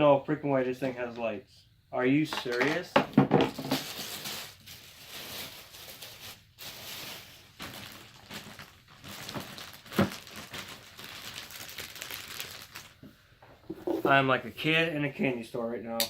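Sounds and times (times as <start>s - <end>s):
packaging rustling and crinkling: 3.5s - 13.0s.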